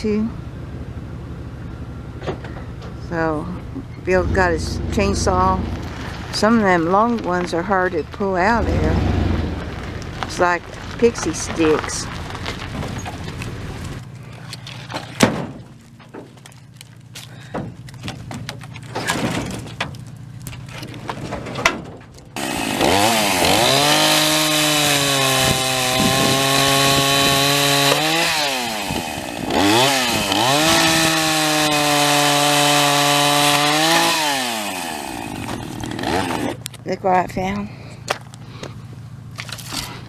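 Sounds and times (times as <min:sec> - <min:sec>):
chainsaw revving and idling: 0:04.1 - 0:07.7, 0:08.4 - 0:14.9, 0:22.4 - 0:36.8
wood knocking and clattering: 0:14.8 - 0:16.6, 0:17.4 - 0:22.4.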